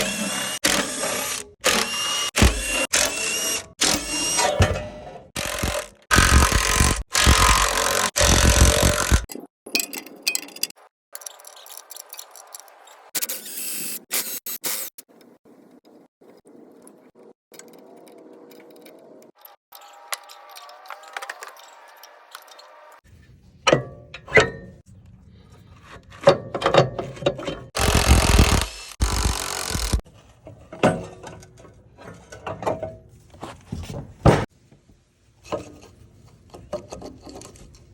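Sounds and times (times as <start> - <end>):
loud burst of tool noise: 0.0 - 4.6, 5.4 - 9.3, 27.8 - 30.0.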